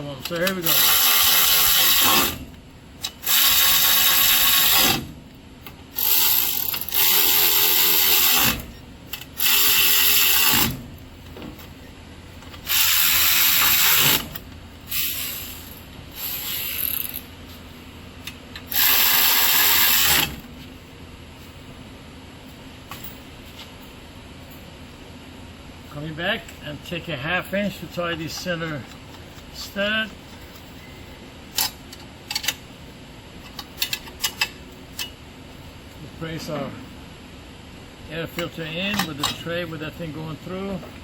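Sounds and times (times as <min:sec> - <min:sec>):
power driver running in bursts: 0:00.2 - 0:11.0, 0:12.6 - 0:17.3, 0:18.6 - 0:20.5.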